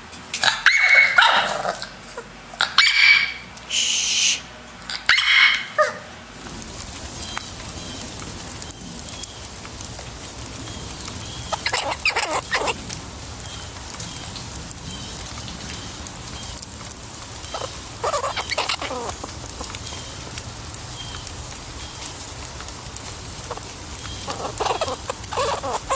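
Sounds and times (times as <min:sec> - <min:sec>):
animal chattering calls: 0:00.3 - 0:06.2, 0:10.6 - 0:12.9, 0:17.4 - 0:25.9.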